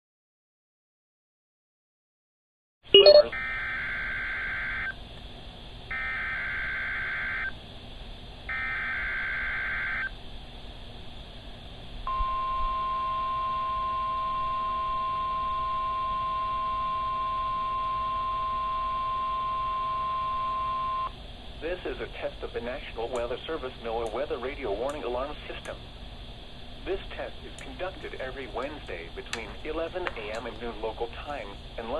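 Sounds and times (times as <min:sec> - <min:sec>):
steady alarm tone: 0:03.0 - 0:05.0, 0:05.9 - 0:07.6, 0:08.5 - 0:10.2, 0:12.1 - 0:21.2
screechy data bursts: 0:03.3 - 0:05.0, 0:05.9 - 0:07.6, 0:08.5 - 0:10.2.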